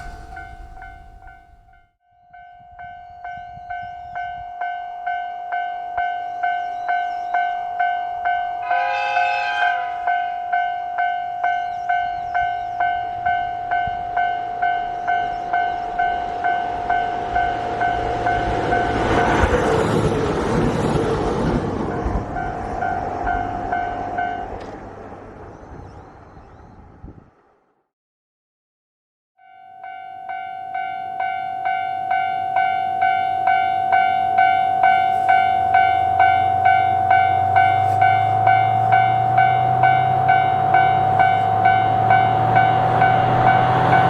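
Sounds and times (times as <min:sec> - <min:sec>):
train wheel and rail noise: 0:00.0 - 0:01.8, 0:02.6 - 0:27.0, 0:30.1 - 0:44.0
train horn: 0:08.4 - 0:11.0, 0:32.2 - 0:44.0
level-crossing bell ringing: 0:29.4 - 0:44.0.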